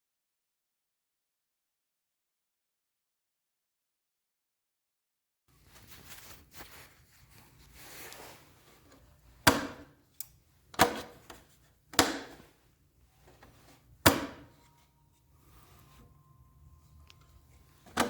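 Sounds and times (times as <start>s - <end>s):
soft handling noises: 5.5s - 18.0s.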